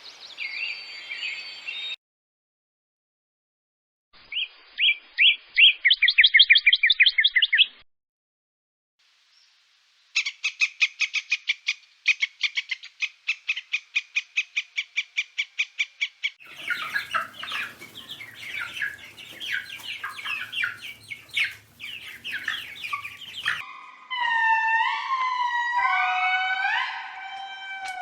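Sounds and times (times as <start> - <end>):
fast series of short chirps: 16.4 - 23.6
group of birds chirping: 16.4 - 23.6
loud falling animal calls: 16.4 - 23.6.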